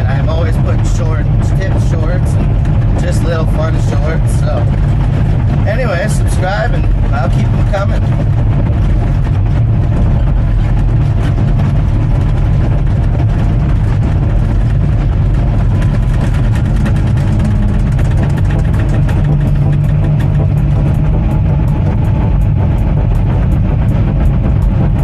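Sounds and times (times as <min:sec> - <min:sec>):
bulldozer diesel engine rumble: 0:00.0 - 0:25.0.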